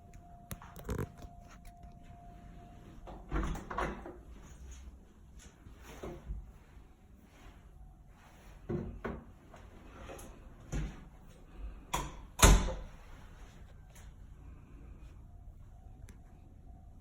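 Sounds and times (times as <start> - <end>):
doors opening and shutting: 2.9 - 4.8, 8.8 - 13.1.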